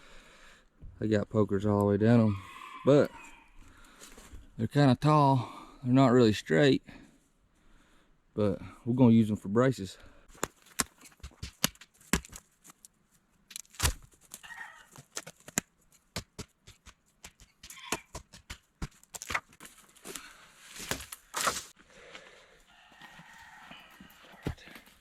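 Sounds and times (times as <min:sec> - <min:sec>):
woody cracks and snaps: 0:13.5 - 0:14.4.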